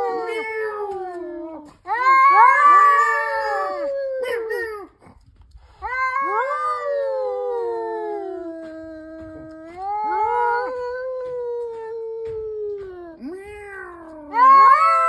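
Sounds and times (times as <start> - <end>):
cats yowling: 0.0 - 5.1, 5.8 - 15.0.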